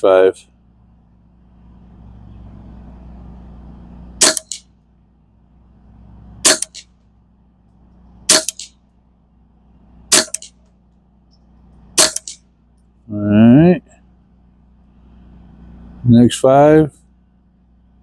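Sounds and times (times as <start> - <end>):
rifle shots: 4.2 - 4.7, 6.4 - 6.9, 8.3 - 8.8, 10.1 - 10.6, 12.0 - 12.4.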